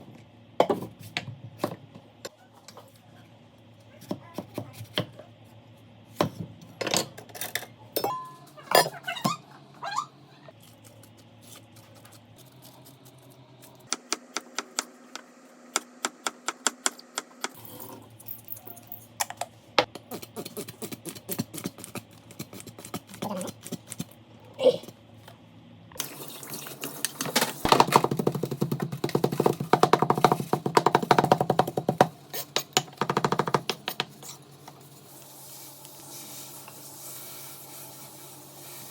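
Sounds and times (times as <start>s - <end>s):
utensils clinking against dishes: 6.8s - 9.4s.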